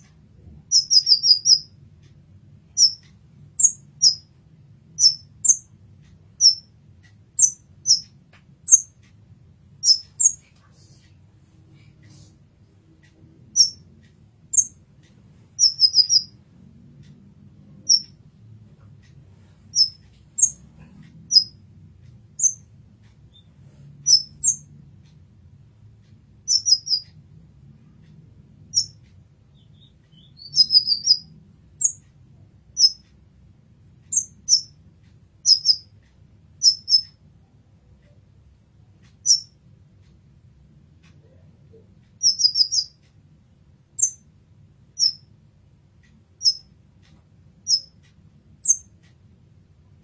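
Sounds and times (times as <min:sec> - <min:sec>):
faint low hum: 0:00.0 - 0:50.0
bird chirping high and sharp: 0:00.7 - 0:01.7, 0:02.8 - 0:03.0, 0:03.6 - 0:04.3, 0:05.0 - 0:05.7, 0:06.4 - 0:06.7, 0:07.4 - 0:09.0, 0:09.8 - 0:10.4, 0:13.6 - 0:13.8, 0:15.6 - 0:16.4, 0:17.9 - 0:18.2, 0:19.7 - 0:20.6, 0:21.3 - 0:21.6, 0:22.4 - 0:22.7, 0:23.3 - 0:24.7, 0:26.5 - 0:27.1, 0:28.7 - 0:32.0, 0:32.8 - 0:33.0, 0:34.1 - 0:34.8, 0:35.4 - 0:35.9, 0:36.6 - 0:37.2, 0:39.2 - 0:39.6, 0:42.2 - 0:43.0, 0:44.0 - 0:44.2, 0:45.0 - 0:45.2, 0:46.4 - 0:46.7, 0:47.6 - 0:48.0.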